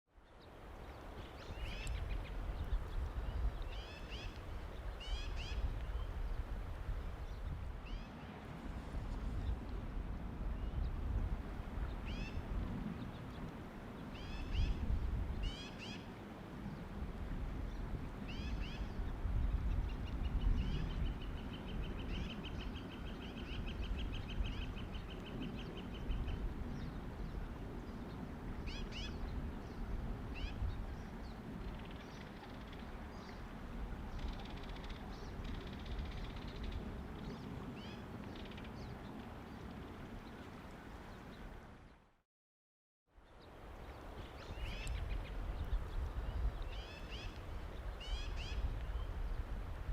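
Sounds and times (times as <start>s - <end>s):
low rumble of wind: 0.1s - 42.2s, 43.1s - 49.9s.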